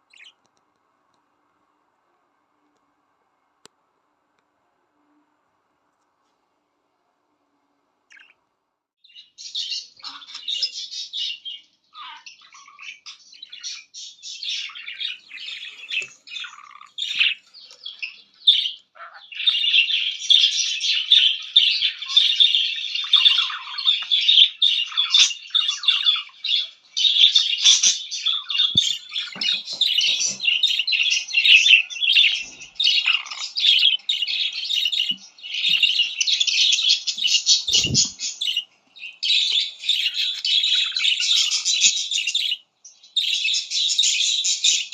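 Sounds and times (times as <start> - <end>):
budgerigar warbling and chattering: 8.1 - 8.4, 9.4 - 42.6.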